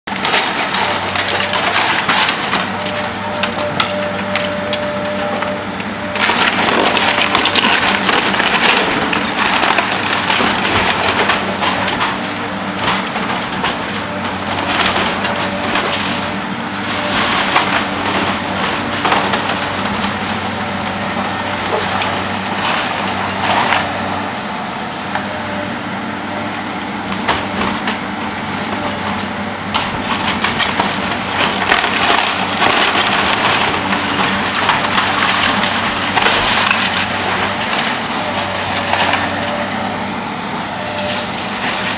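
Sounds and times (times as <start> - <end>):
heavy machine engine: 0.0 - 41.9
timber crushing and splintering: 0.1 - 25.6, 26.5 - 41.9.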